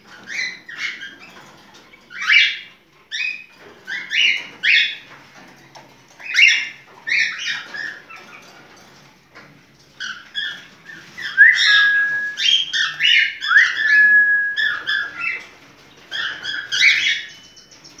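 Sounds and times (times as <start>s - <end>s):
animal whistle-like calls: 11.4s - 15.3s.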